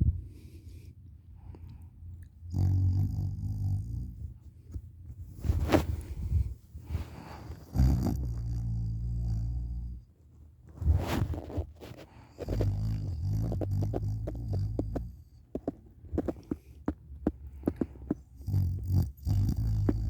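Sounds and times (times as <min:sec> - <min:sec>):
noisy breath: 0:00.1 - 0:02.0, 0:05.4 - 0:07.7, 0:10.8 - 0:20.0
person snoring: 0:17.8 - 0:20.0.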